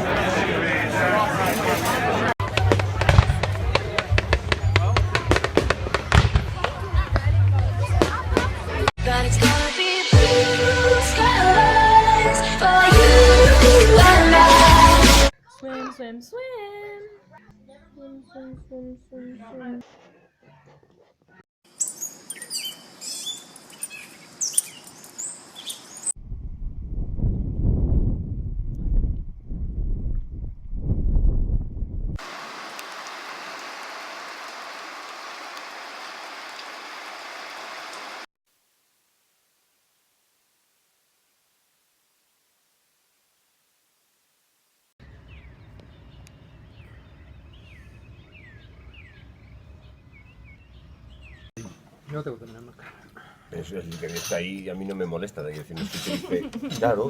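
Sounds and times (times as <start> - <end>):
birds chirping: 21.7 - 26.2, 45.0 - 51.7
low rumbling noise: 26.2 - 32.2.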